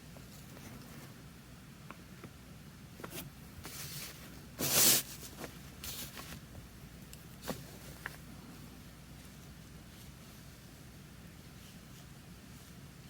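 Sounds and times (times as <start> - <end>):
brush swishing on paper: 3.7 - 6.2.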